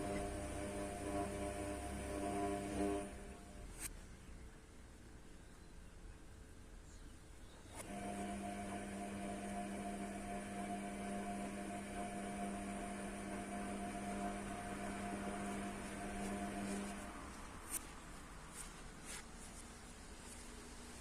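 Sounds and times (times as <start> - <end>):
appliance motor humming: 0.0 - 3.7, 7.8 - 17.3.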